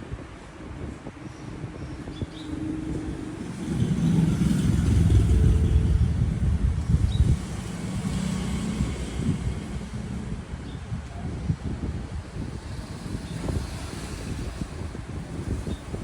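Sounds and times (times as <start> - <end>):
motor vehicle passing: 2.3 - 10.6, 12.3 - 16.0.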